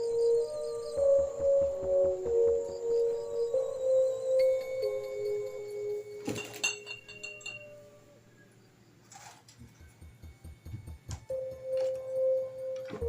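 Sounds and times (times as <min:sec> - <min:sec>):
droning ambient music: 0:00.0 - 0:13.0
sharp clinks: 0:06.2 - 0:07.8.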